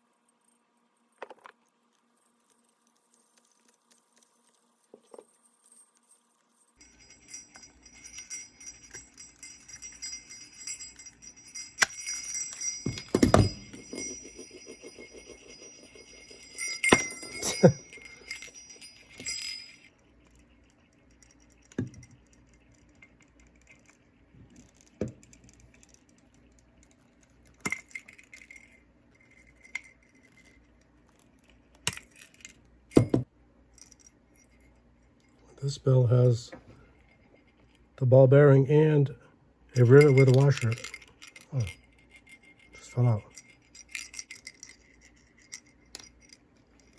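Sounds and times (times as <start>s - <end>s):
sleigh bells jingling: 5.5s - 22.7s, 39.7s - 46.9s.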